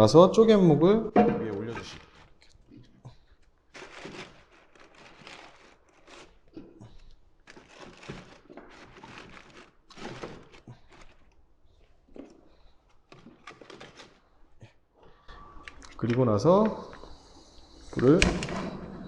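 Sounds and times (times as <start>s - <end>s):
wooden knocks: 1.1s - 2.2s
newspaper rustling: 1.5s - 2.4s, 3.6s - 14.4s.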